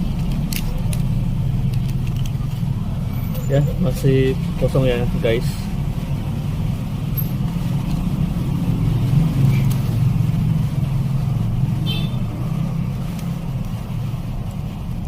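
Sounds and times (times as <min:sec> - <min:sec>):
steady low rumble: 0:00.0 - 0:15.0.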